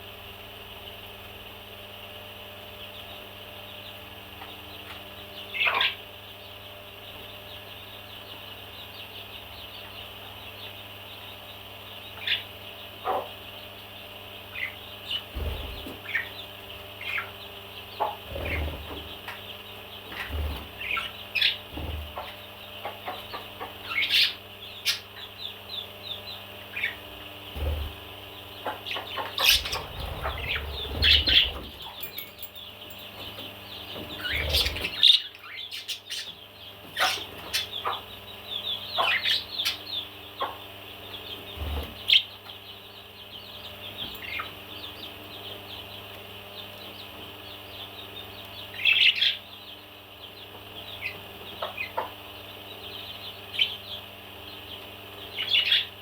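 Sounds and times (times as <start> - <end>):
steady background hum: 0.0 - 56.0
parrot chirping and squawking: 28.9 - 31.6, 37.0 - 37.9.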